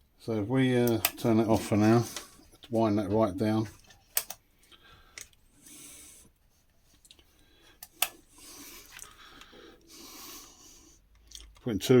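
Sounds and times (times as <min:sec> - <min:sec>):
sharp click: 0:04.2 - 0:04.4.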